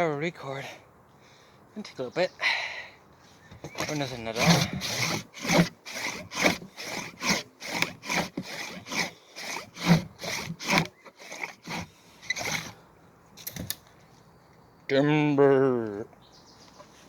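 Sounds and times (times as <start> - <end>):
handsaw cutting wood: 3.7 - 12.8.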